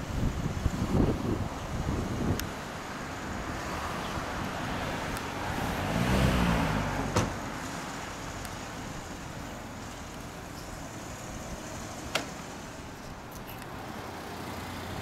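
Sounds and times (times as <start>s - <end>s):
traffic noise: 0.0s - 15.0s
vehicle driving past: 4.7s - 7.9s.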